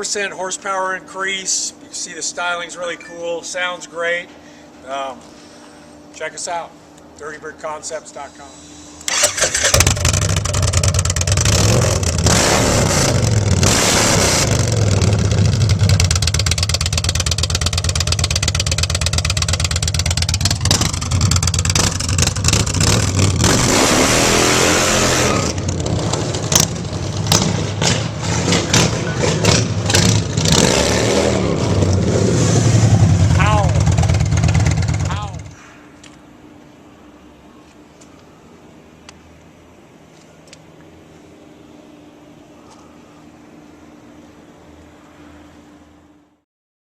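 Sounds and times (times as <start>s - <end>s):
motorcycle engine revving: 9.1s - 35.6s.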